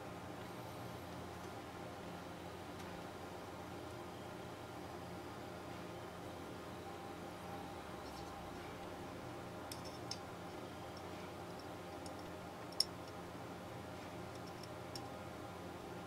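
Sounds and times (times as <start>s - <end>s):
faint hum: 0.0s - 16.0s
light metal clicks: 9.7s - 13.2s, 14.3s - 15.1s.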